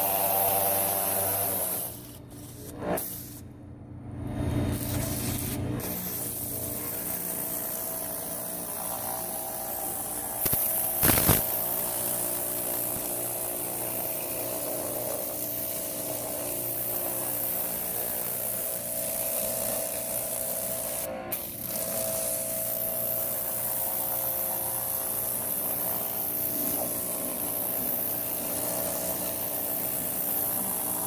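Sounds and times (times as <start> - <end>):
water jet spraying on plastic: 10.1 - 11.7.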